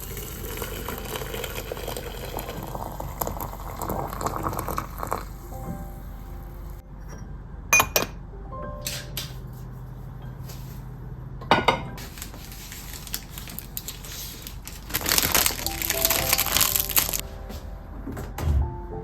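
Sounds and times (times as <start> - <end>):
soft background music: 4.1 - 10.9, 14.9 - 19.0
household items clattering: 11.7 - 17.2
dense crackling noise: 12.0 - 17.2.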